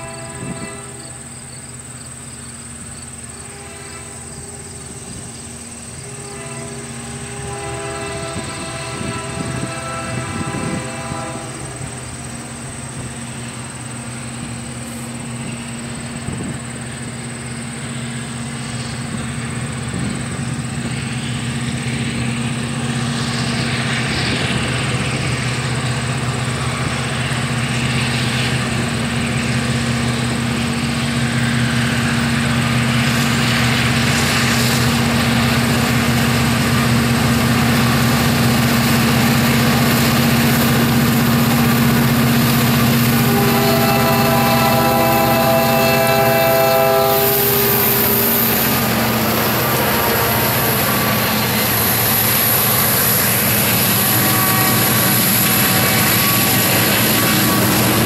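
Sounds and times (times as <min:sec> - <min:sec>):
diesel locomotive engine drone: 0:00.0 - 0:58.0
hiss: 0:12.0 - 0:43.3.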